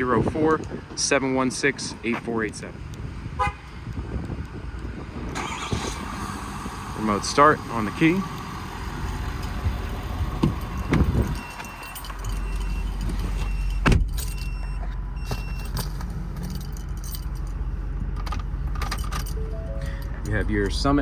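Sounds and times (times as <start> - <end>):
diesel truck engine idling: 4.9 - 11.5
keys jangling: 15.7 - 17.6, 18.8 - 19.5
short electronic chime beeps: 19.3 - 20.2.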